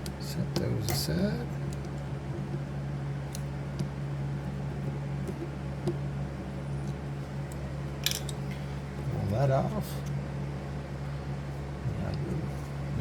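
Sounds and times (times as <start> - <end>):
steady low hum: 0.0 - 13.0
light clicks of small metal parts: 6.8 - 8.4.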